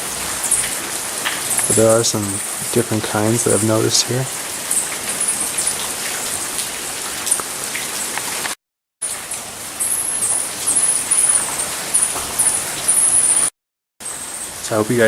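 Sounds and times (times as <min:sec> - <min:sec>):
rain-like hiss: 0:00.0 - 0:15.0
hummingbirds chirping: 0:09.8 - 0:13.5.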